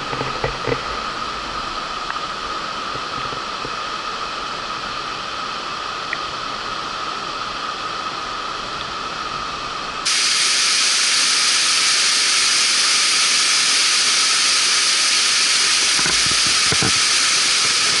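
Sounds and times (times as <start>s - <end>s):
waterfall rushing: 0.4s - 18.0s.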